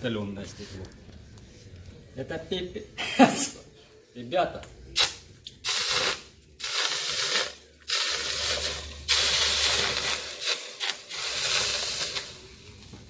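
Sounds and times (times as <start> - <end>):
hot glass hissing in water: 5.0 - 13.0.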